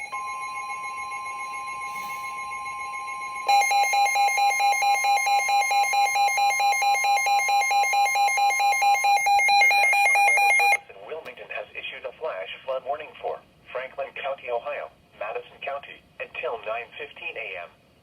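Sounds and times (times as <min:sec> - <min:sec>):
rapid alarm beeping: 0:00.0 - 0:10.8
steady electronic alarm tones: 0:00.0 - 0:10.8.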